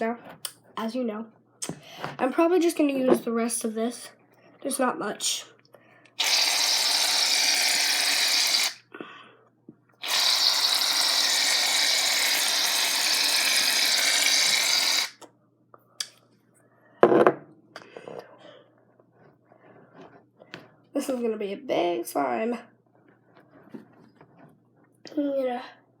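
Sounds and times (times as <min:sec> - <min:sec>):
aerosol can hissing: 0:06.2 - 0:08.8, 0:10.0 - 0:15.2.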